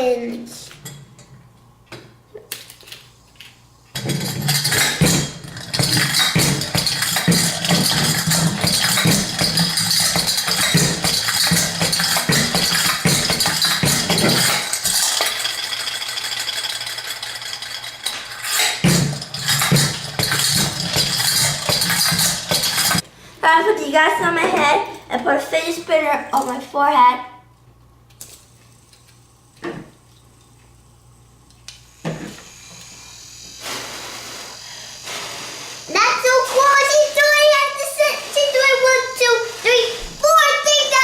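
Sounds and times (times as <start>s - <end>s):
toy clattering and rattling: 4.0s - 23.0s.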